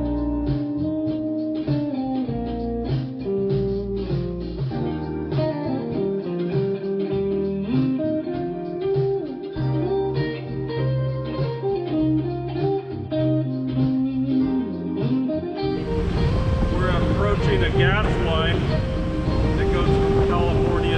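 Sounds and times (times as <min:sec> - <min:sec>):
guitar instrumental: 0:00.0 - 0:20.9
bass line: 0:15.6 - 0:20.9.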